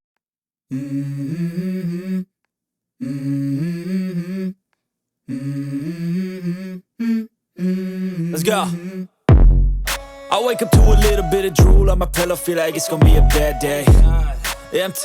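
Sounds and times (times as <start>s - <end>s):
person humming: 5.3s - 9.1s, 10.3s - 15.0s.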